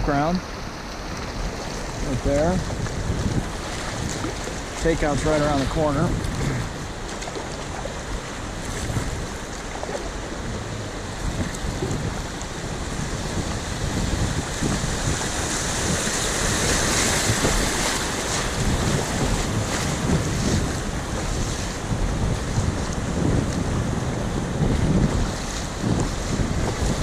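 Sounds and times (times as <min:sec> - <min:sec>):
river water rushing and splashing: 0:00.0 - 0:27.0
wind buffeting microphone: 0:00.0 - 0:27.0.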